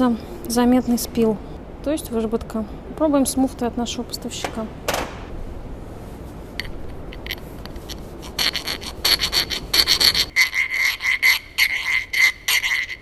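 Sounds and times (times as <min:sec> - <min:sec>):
hand file rasping on steel: 0:07.3 - 0:13.0.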